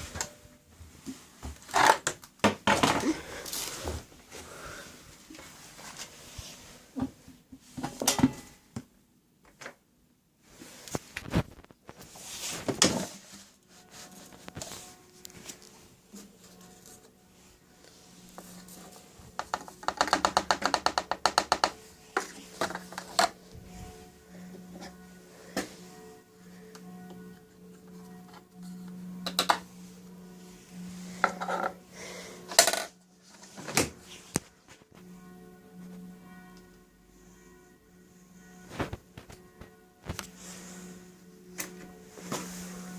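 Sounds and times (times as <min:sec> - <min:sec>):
sharp knocks and clicks: 0:19.4 - 0:21.8.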